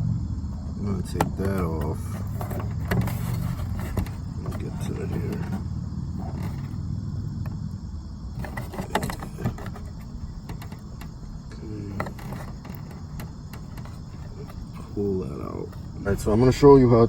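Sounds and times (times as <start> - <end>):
steady low rumble: 0.0 - 17.0
clicks and knocks on plastic trim: 1.0 - 6.8, 8.3 - 15.0.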